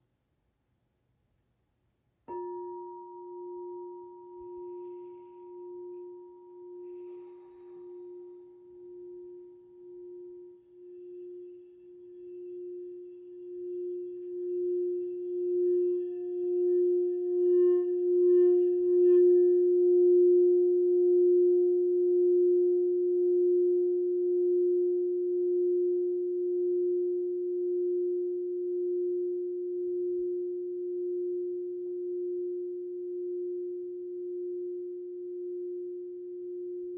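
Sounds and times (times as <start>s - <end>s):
crystal singing bowl ringing: 2.3s - 23.7s.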